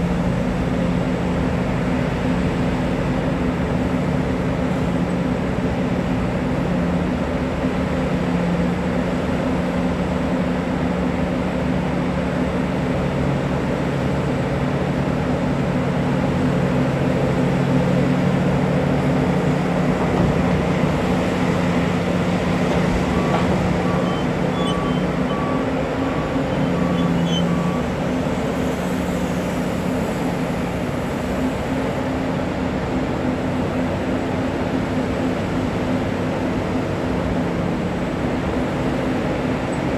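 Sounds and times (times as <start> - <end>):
heavy diesel engines droning: 0.0 - 39.9
short beeps: 23.0 - 28.2.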